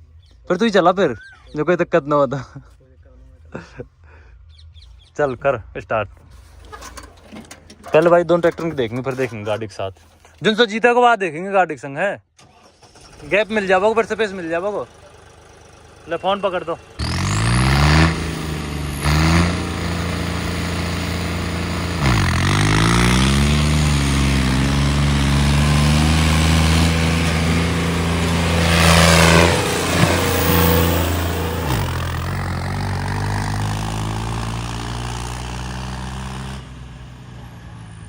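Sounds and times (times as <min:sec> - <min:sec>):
tractor diesel engines revving: 0:06.2 - 0:10.4, 0:12.4 - 0:38.0.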